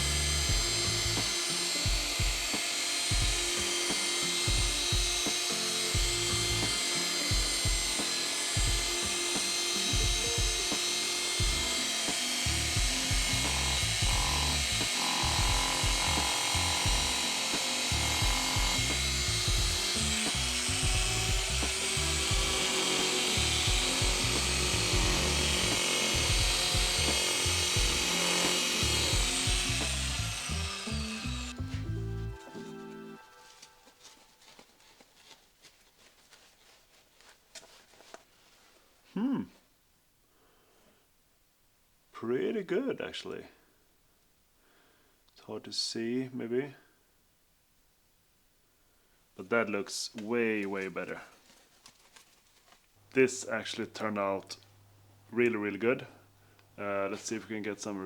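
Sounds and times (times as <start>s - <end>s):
background music with beat: 0.0s - 14.8s, 15.4s - 34.3s
power polishing tool running: 0.0s - 32.3s.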